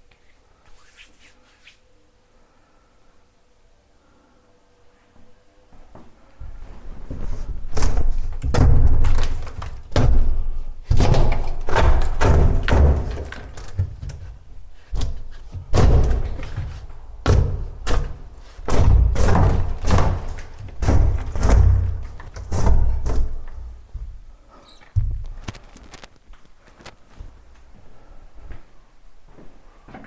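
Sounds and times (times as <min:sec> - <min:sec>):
heavy thuds on a wall: 0:06.4 - 0:24.4, 0:25.0 - 0:25.4
debris rattling: 0:07.5 - 0:24.4.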